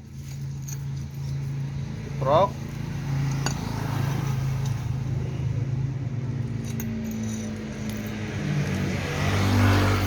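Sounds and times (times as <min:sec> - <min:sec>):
small parts clicking and jingling: 0:00.0 - 0:01.7, 0:03.2 - 0:03.7, 0:06.4 - 0:09.1
steady low engine hum: 0:00.0 - 0:10.0.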